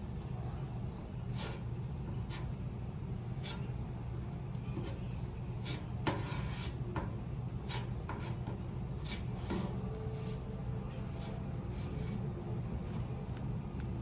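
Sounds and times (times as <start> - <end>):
steady low hum: 0.0 - 14.0
scraping and rubbing on metal tank: 1.3 - 3.8, 4.6 - 13.1.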